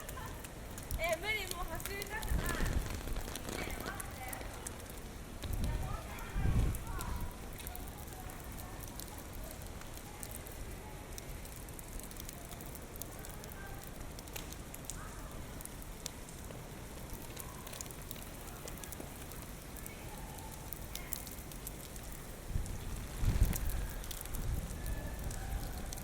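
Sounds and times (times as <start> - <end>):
low wind rumble: 0.0 - 7.5, 22.2 - 26.0
steady heavy rain: 0.0 - 26.0.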